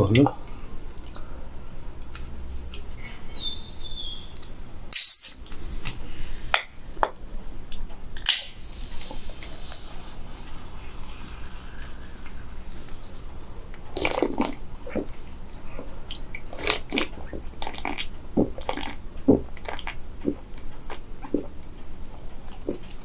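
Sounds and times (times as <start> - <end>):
can opening with fizzing hiss: 4.3 - 7.0, 8.2 - 13.2.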